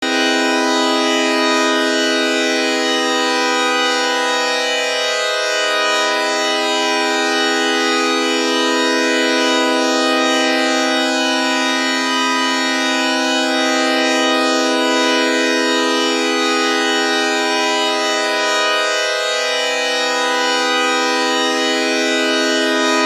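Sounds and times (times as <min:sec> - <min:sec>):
siren steady tone: 0:00.1 - 0:23.0.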